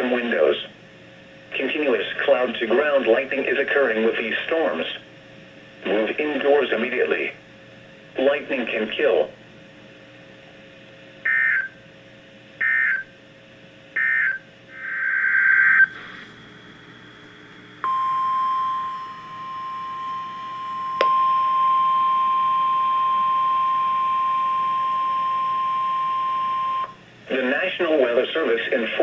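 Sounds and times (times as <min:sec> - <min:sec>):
steady warning alarm tone: 0:11.2 - 0:11.8, 0:12.6 - 0:13.1, 0:14.0 - 0:16.0, 0:17.8 - 0:27.0
buzzy data bursts: 0:14.0 - 0:15.9.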